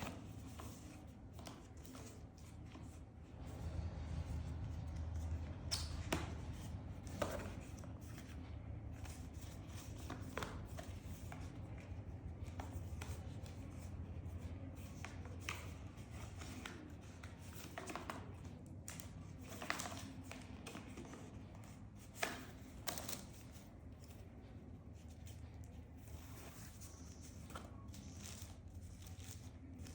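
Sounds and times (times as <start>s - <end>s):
low steady hum: 0.0s - 29.9s.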